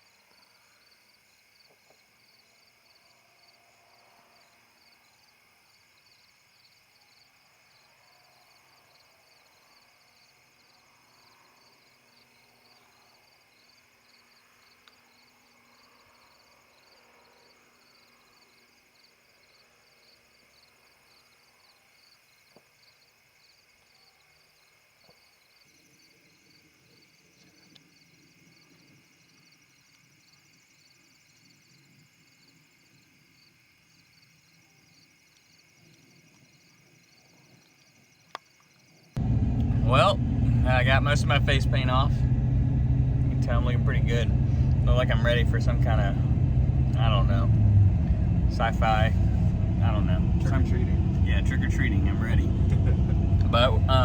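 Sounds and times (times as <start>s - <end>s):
crickets chirping: 0.0s - 54.0s
faint low rumble: 39.2s - 54.0s.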